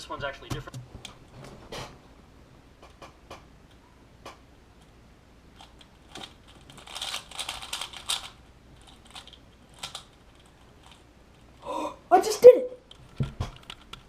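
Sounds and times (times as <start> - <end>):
puzzle cube clicking turns: 5.6 - 11.0.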